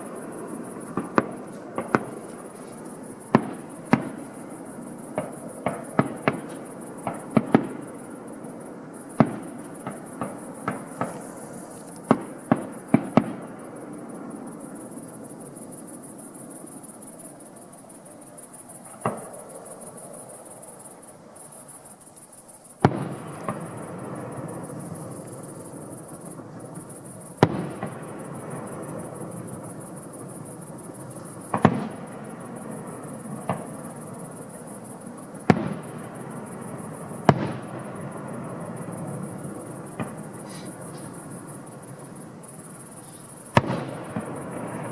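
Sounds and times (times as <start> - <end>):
firework crackle and rumble: 0.0 - 44.9
sharp firework bangs: 0.8 - 2.5, 3.2 - 4.3, 5.1 - 7.9, 9.2 - 11.5, 22.8 - 25.1, 27.4 - 29.1, 31.4 - 32.2, 35.4 - 39.0, 39.8 - 41.4, 43.0 - 44.9
firework shell bursts: 40.0 - 41.4.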